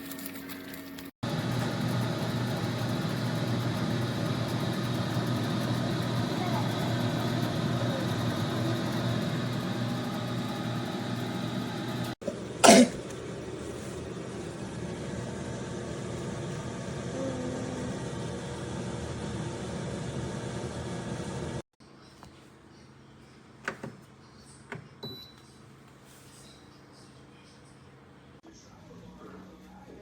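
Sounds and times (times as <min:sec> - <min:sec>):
convection fan humming: 0:01.2 - 0:21.6.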